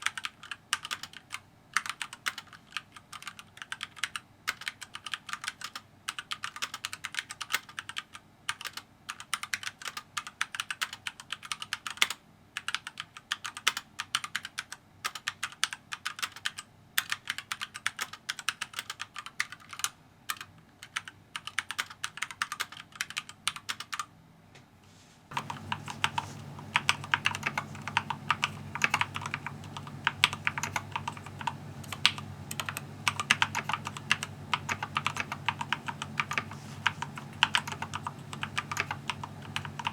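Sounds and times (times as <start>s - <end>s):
mechanical keyboard typing: 0.0s - 24.1s, 25.3s - 39.9s
steady low hum: 24.4s - 39.9s.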